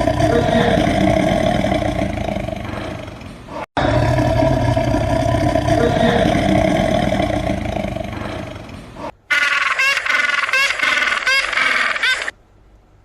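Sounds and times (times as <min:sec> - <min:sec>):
animal long loud call: 0:00.0 - 0:03.2, 0:03.8 - 0:08.7.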